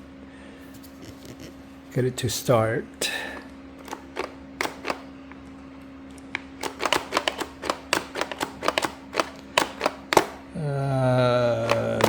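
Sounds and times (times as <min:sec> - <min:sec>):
plastic trigger clicks: 0:03.8 - 0:05.1, 0:06.2 - 0:10.4, 0:11.6 - 0:12.0.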